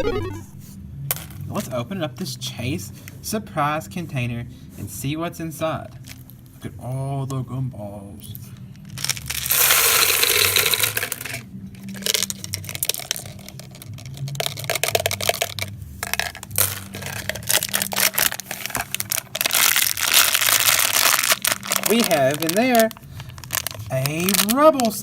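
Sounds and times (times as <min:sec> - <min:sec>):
candy rattling out of container: 0:08.9 - 0:25.0.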